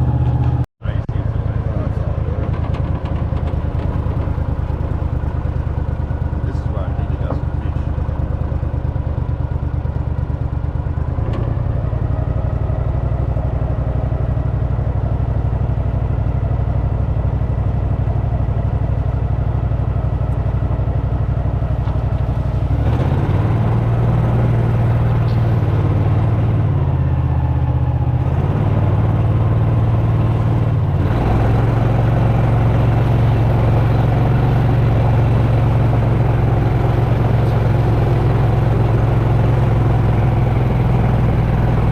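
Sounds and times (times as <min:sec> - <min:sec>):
engine running: 0:00.0 - 0:41.9.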